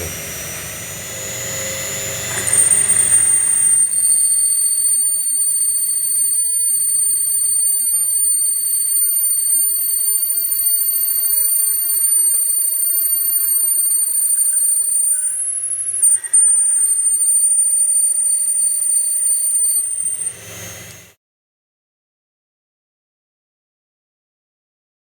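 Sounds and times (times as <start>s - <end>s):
dull rushing machine noise: 0.0s - 5.0s, 19.8s - 21.1s
machine high-pitched whine: 0.0s - 21.2s.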